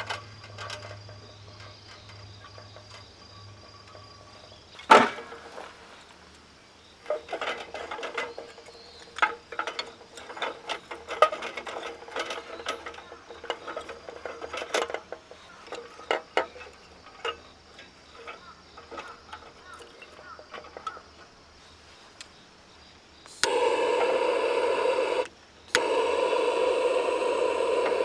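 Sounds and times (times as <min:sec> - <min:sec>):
kindling snapping: 0:04.8 - 0:06.4.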